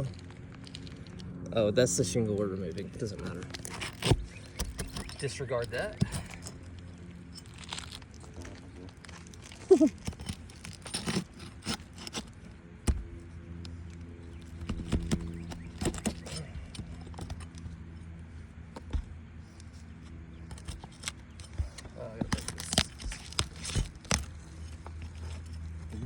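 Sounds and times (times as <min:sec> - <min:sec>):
steady low hum: 0:00.0 - 0:26.0
hand tools prying at shingles: 0:03.4 - 0:08.2, 0:09.0 - 0:13.2, 0:14.2 - 0:17.7, 0:20.4 - 0:25.6.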